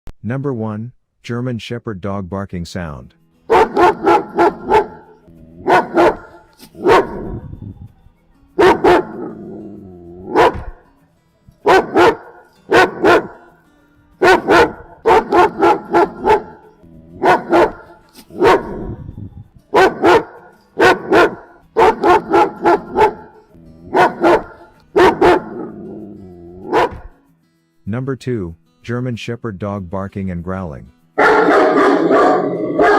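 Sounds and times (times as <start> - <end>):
dog barking loudly: 3.5 - 7.4, 8.6 - 10.8, 11.6 - 13.5, 14.2 - 19.0, 19.7 - 27.1, 31.2 - 32.9.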